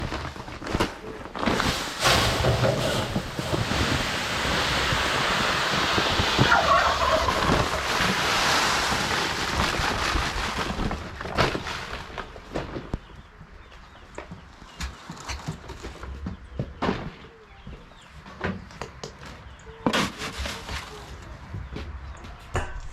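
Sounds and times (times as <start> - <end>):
steady rush of noise: 1.6 - 11.2
chickens clucking: 2.1 - 9.6.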